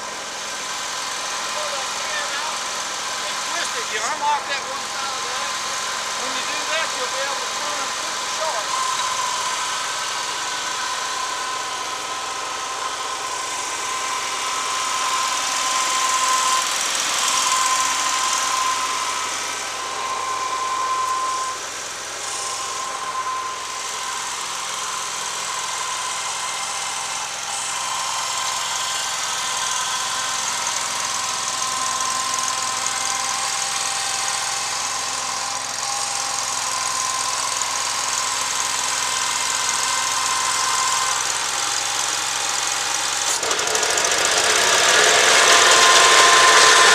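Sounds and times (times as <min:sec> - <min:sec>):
stump grinder engine running: 0:00.0 - 0:46.9
high whine: 0:04.4 - 0:29.1.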